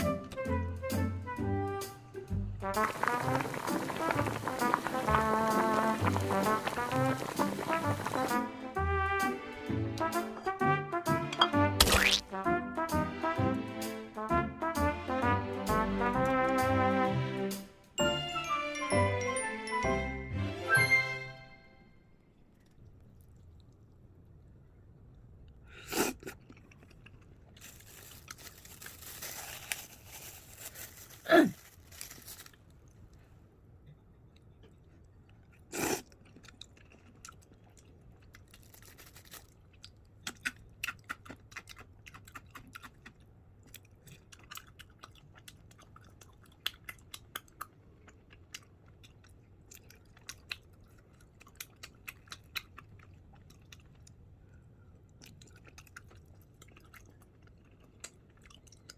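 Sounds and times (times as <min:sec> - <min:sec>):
person chewing and crunching food: 0:02.8 - 0:08.4, 0:11.8 - 0:12.4, 0:22.5 - 0:24.5, 0:25.8 - 0:33.1, 0:34.2 - 0:58.9
rustling: 0:27.6 - 0:32.7.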